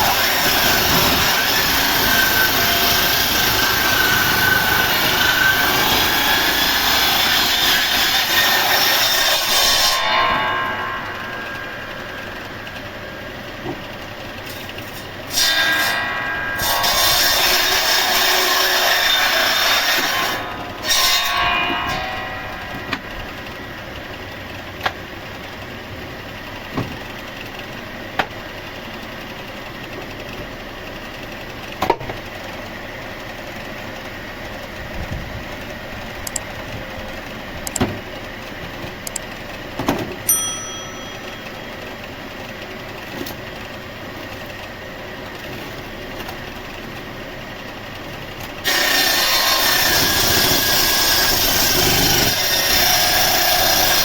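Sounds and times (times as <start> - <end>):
saw cutting through wood: 0.0 - 13.3, 14.5 - 23.6, 48.6 - 54.0
sawmill machinery running: 0.0 - 54.0.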